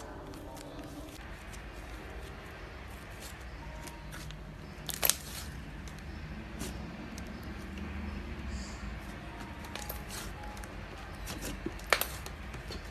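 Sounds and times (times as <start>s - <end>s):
slime clicking and crackling: 3.1s - 7.9s, 9.6s - 12.8s.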